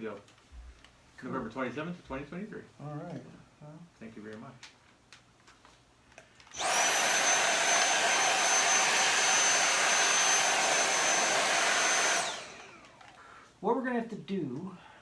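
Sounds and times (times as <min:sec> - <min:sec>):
electric fan motor whining: 0:06.5 - 0:13.1.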